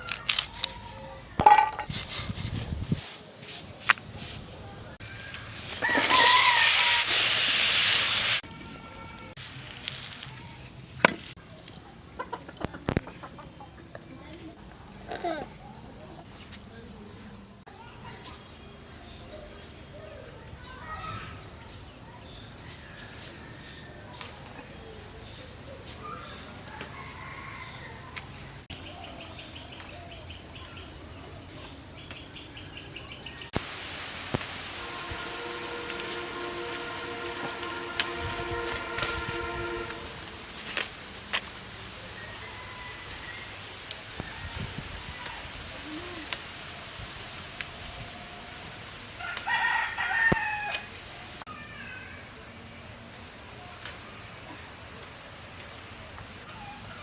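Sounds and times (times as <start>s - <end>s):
food frying sizzle: 5.0s - 8.4s, 33.5s - 36.1s
steady hiss: 33.5s - 49.2s.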